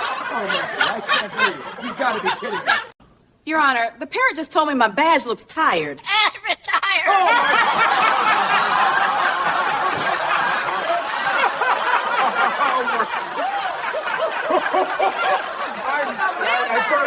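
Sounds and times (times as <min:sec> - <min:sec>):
crowd laughing: 0:00.0 - 0:03.0, 0:07.0 - 0:17.0.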